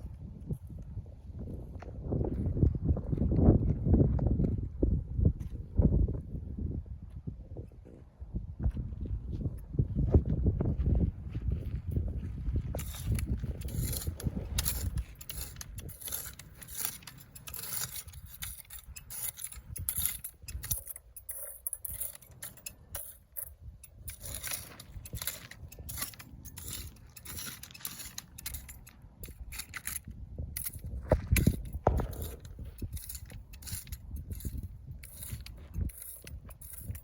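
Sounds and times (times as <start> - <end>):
dry weeds pulled from gravel: 12.8 - 37.0.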